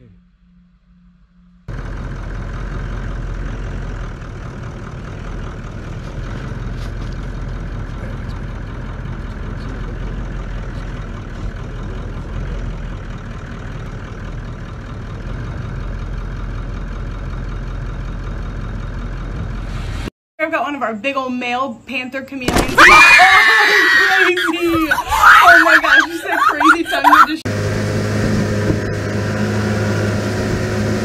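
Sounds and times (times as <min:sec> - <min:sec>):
vehicle engine idling: 0:00.1 - 0:20.1.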